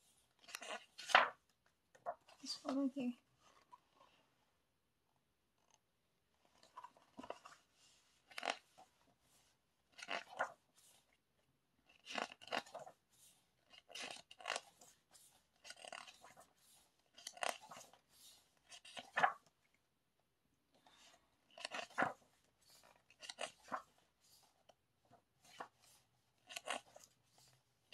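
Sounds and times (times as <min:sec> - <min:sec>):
glossy pages rustling: 0:00.3 - 0:02.8, 0:06.4 - 0:11.2, 0:11.8 - 0:19.6, 0:21.4 - 0:27.9.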